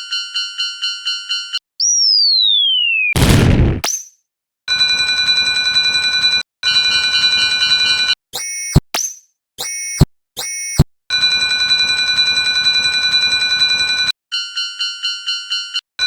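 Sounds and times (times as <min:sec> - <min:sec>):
sharp thump: 0:03.2 - 0:04.0.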